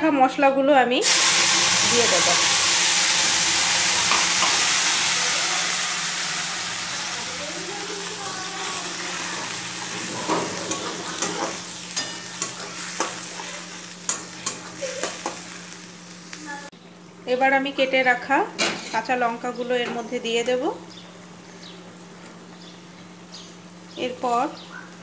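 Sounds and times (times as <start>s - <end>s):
paste sizzling in hot oil: 1.0s - 16.7s
spatula scraping and tapping pan: 10.0s - 15.4s.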